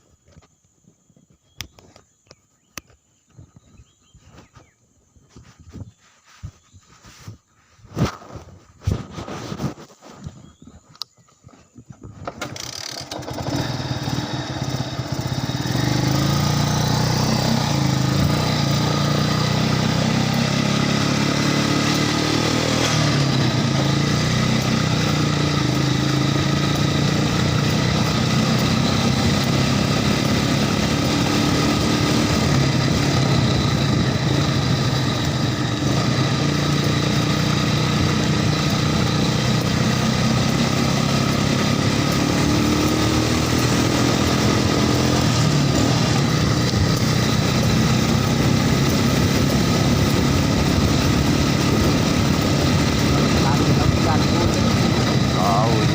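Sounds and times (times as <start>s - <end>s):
off-road vehicle engine: 12.2s - 55.9s.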